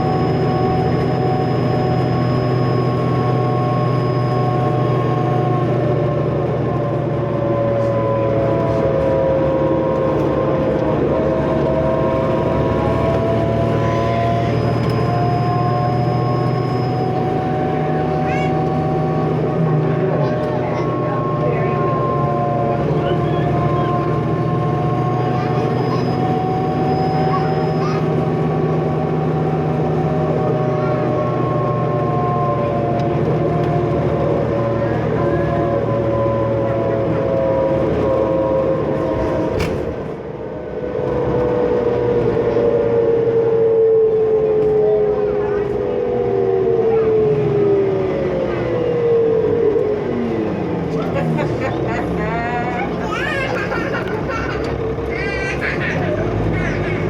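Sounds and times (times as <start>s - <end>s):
turbo whine: 0.0s - 33.4s
bus diesel engine drone: 0.0s - 57.0s.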